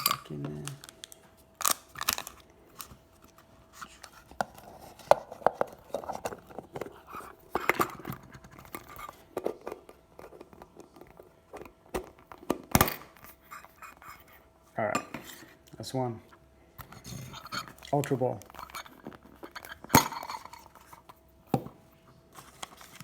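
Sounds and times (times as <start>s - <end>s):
foil packs crinkling: 0.0s - 3.2s.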